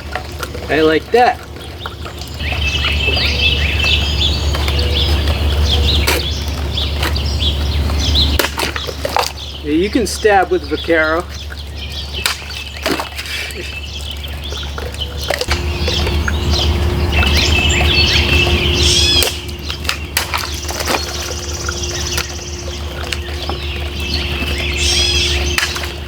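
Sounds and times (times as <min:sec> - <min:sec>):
birds chirping and singing: 0:00.0 - 0:26.0
steady low rumble: 0:13.7 - 0:26.0.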